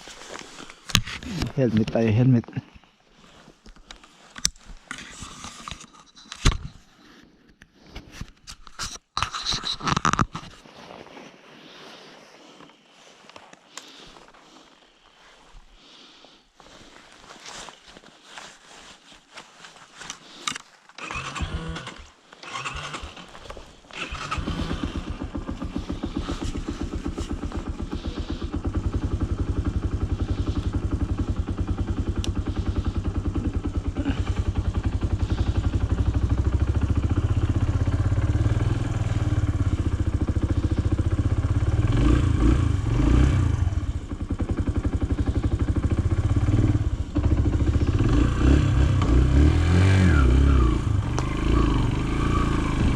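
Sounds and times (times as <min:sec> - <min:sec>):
motorbike engine: 0:20.5 - 0:52.9.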